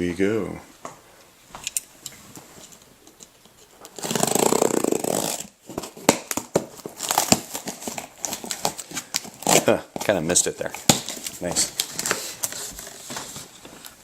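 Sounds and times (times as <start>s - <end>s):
packing tape ripping: 3.8s - 10.1s, 10.7s - 13.9s
cardboard rustling and clicking: 3.8s - 14.0s.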